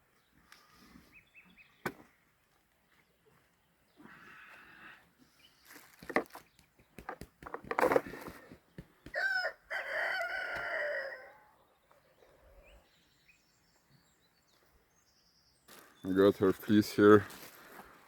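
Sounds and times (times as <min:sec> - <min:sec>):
knocks and rustles: 0:05.9 - 0:09.0
rooster crowing: 0:09.1 - 0:11.6.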